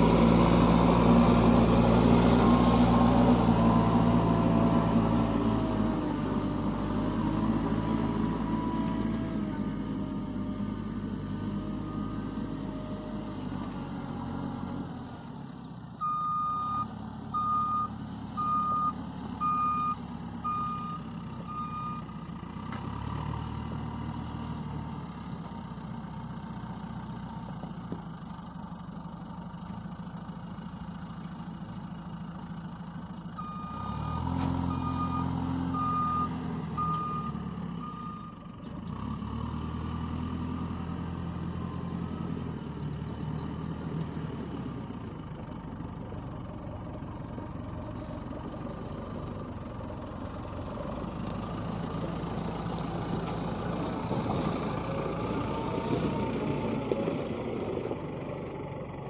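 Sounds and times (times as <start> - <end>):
diesel engine revving: 0.0 - 25.4, 33.4 - 59.0
reversing alarm beeping: 16.0 - 22.0, 33.4 - 38.3.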